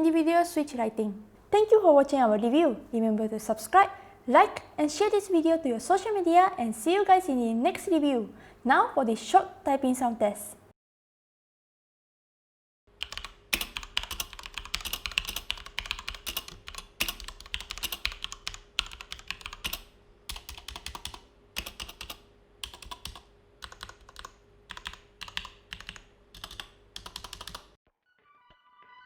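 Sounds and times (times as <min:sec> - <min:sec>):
mechanical keyboard typing: 0:13.0 - 0:27.8.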